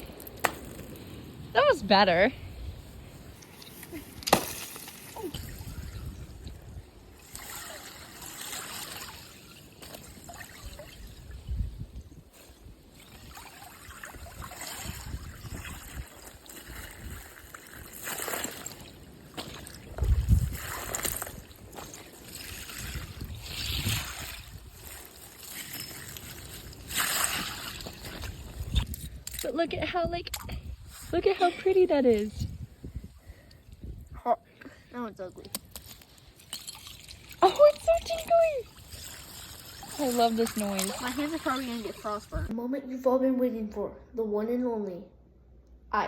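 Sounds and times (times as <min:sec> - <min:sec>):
creek water trickling: 0:04.6 - 0:29.6, 0:35.6 - 0:42.5.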